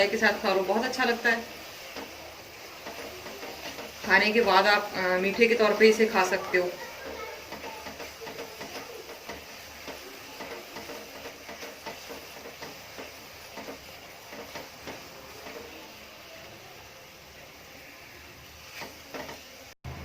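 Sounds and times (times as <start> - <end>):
spatula scraping pan: 0.0 - 19.8
steady cooking hiss: 0.0 - 20.0.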